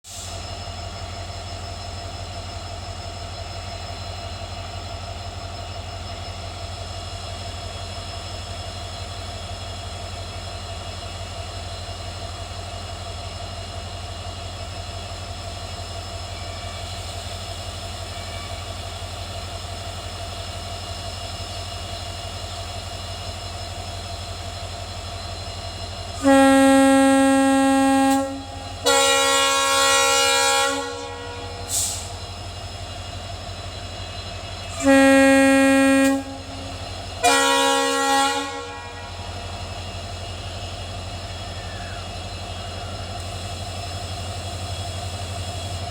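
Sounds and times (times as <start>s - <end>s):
diesel locomotives rumbling: 0.0s - 45.9s
locomotive horn blast: 26.1s - 32.2s, 34.7s - 39.4s.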